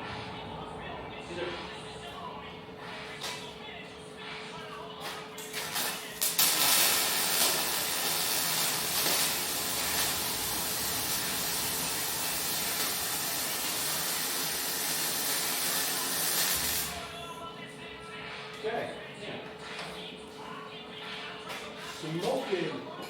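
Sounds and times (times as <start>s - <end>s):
welding arc crackling and hissing: 5.0s - 17.1s.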